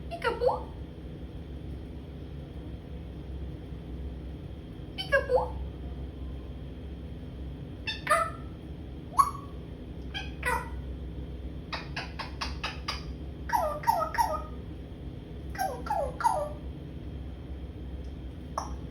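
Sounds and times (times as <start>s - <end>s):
parrot calling: 7.8s - 10.9s, 11.7s - 14.6s, 15.5s - 16.6s, 18.6s - 18.9s.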